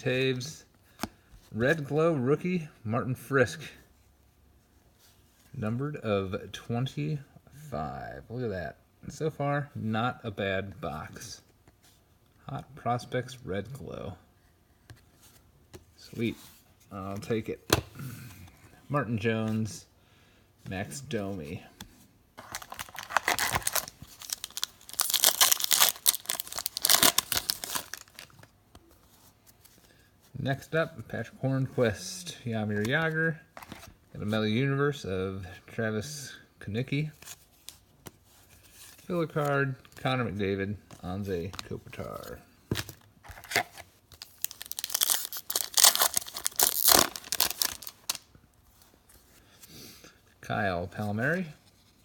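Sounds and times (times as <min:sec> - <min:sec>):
wrapper tearing and crinkling: 0:22.4 - 0:28.5, 0:43.4 - 0:48.3.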